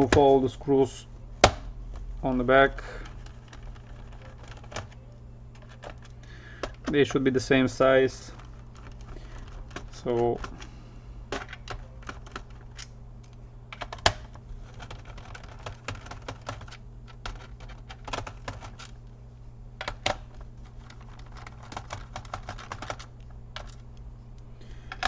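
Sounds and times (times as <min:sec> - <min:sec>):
low steady hum: 0:00.0 - 0:25.0.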